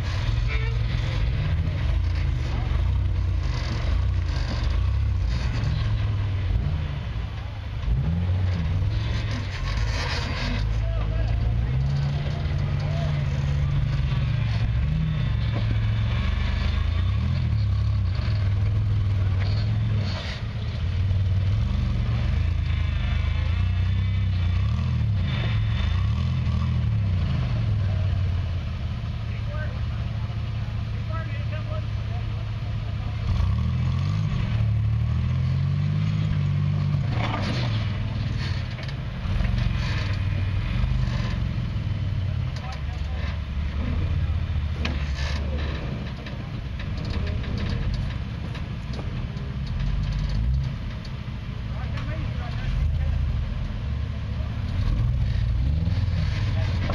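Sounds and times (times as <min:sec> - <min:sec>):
knocks and rattles: 0:00.0 - 0:06.4
off-road vehicle engine revving: 0:00.0 - 0:56.9.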